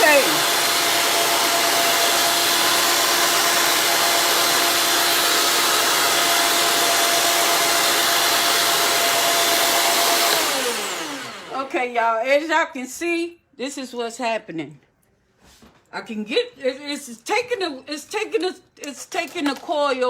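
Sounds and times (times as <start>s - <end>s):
cutting machine motor whining: 0.0s - 11.7s.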